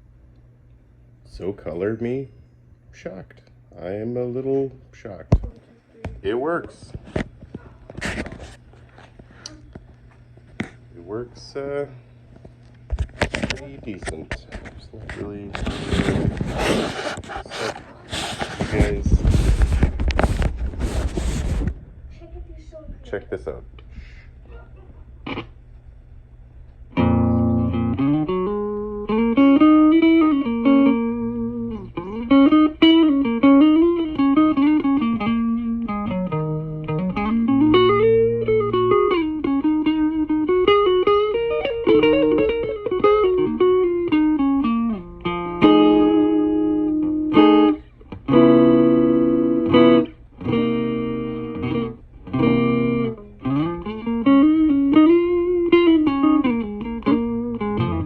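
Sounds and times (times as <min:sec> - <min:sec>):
low amplifier hum: 0:00.0 - 0:58.0
electric guitar: 0:25.2 - 0:25.6, 0:26.9 - 0:58.0.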